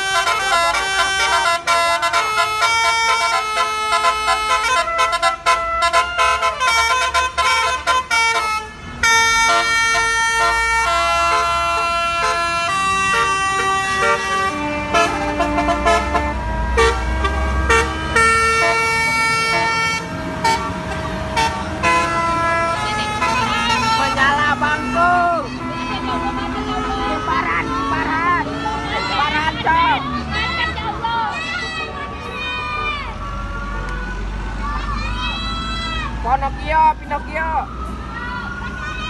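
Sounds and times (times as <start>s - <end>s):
bus horn playing a tune: 0.0s - 30.1s
low engine rumble: 7.5s - 39.0s.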